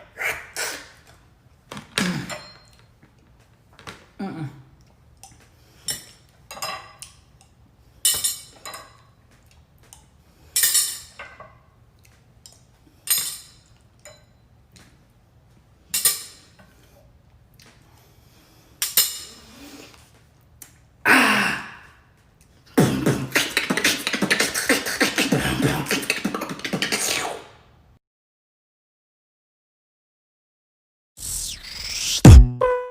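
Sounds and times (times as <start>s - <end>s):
beatboxing mouth percussion: 0.0s - 1.0s, 22.8s - 27.5s.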